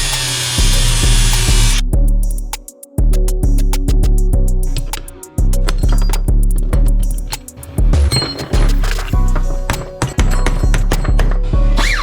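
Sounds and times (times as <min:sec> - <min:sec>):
music with heavy bass beat: 0:00.0 - 0:12.0.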